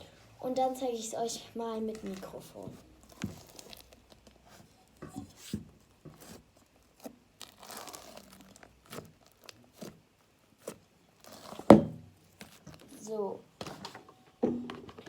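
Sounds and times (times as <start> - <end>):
slime crackling and tearing: 3.0 - 4.7, 6.2 - 10.0, 10.6 - 11.8.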